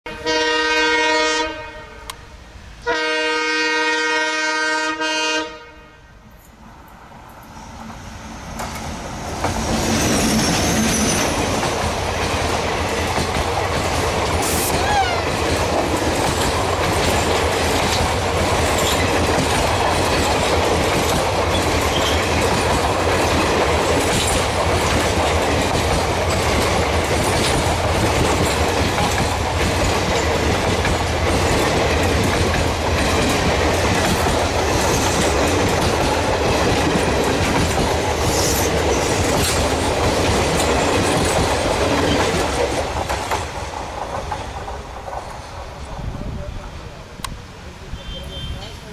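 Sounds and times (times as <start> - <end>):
train wheels rushing on rails: 6.2 - 48.9
clickety-clack over rail joints: 8.5 - 46.5.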